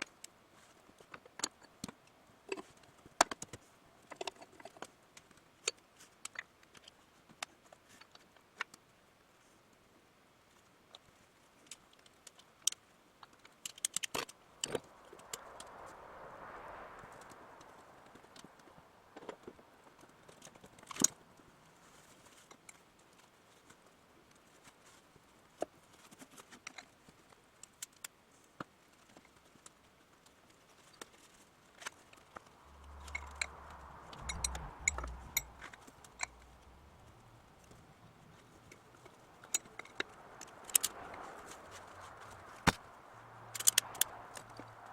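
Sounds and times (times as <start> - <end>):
low rumble and rush: 14.4 - 19.8, 32.0 - 44.9
clicks of hand tools and metal: 43.5 - 44.6.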